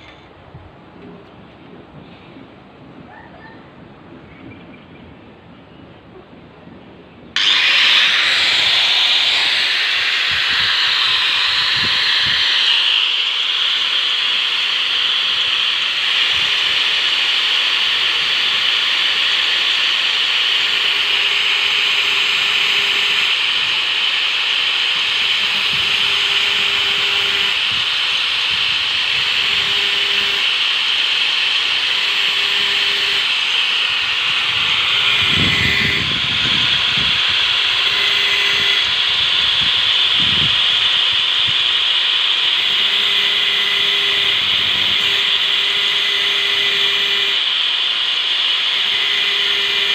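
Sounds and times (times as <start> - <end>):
saw sharpening grinding hiss: 7.4 - 49.9.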